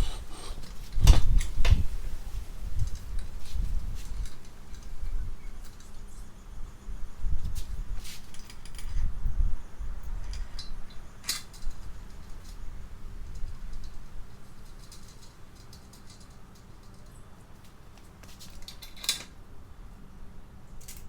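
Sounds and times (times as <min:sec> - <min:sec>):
small tools clicking: 0:10.2 - 0:12.6, 0:13.2 - 0:19.3, 0:20.8 - 0:21.0.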